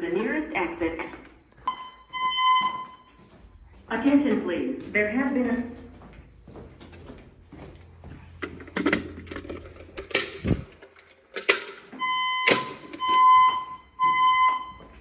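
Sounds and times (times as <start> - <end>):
fire alarm high alert tone: 1.7 - 3.4, 11.9 - 15.0.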